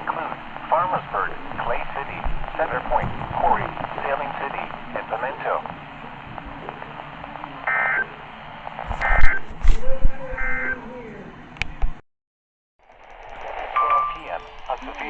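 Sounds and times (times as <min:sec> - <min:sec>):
radio static: 0:00.0 - 0:10.8, 0:13.3 - 0:15.0
loud thumps: 0:01.6 - 0:04.0
screechy digital data tones: 0:13.0 - 0:15.0.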